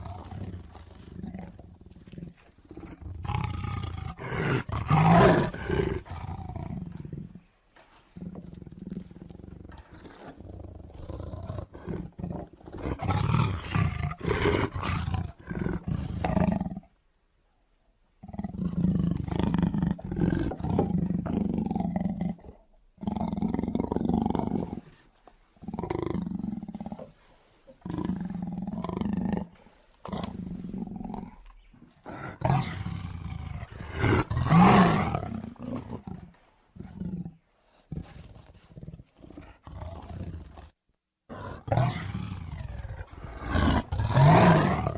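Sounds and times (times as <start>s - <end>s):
tiger roaring: 0.0s - 7.4s, 8.2s - 16.8s, 27.8s - 31.4s, 32.0s - 40.7s, 41.3s - 44.9s.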